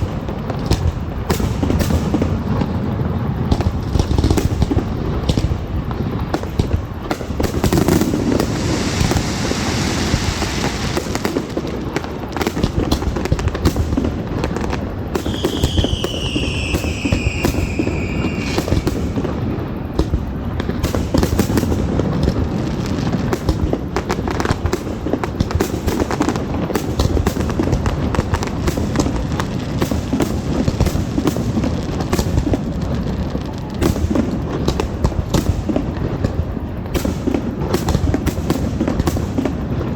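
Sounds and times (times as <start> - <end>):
fireworks bangs and crackling: 0.0 - 39.9
falling firework whistle: 6.5 - 22.3.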